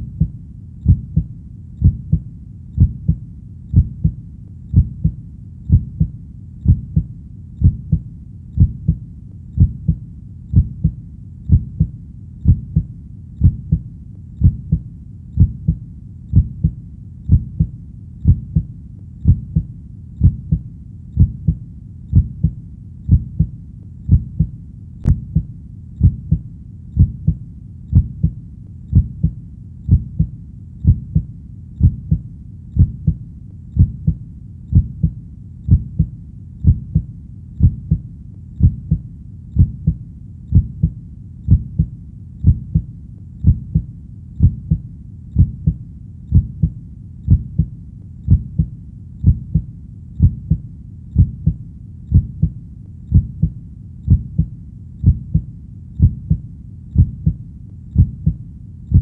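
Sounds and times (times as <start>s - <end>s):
heartbeat thuds: 0.0s - 33.2s, 33.8s - 59.0s.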